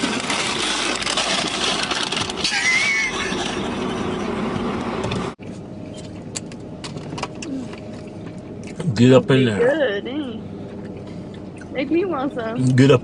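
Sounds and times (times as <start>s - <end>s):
man wheezing laughter: 2.5s - 4.4s.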